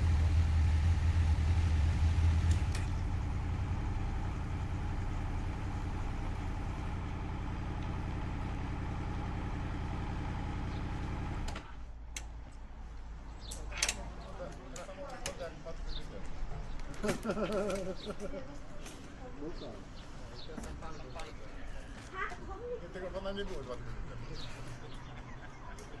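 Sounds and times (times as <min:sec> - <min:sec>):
vehicle engine idling: 0:00.0 - 0:13.6, 0:22.2 - 0:26.0.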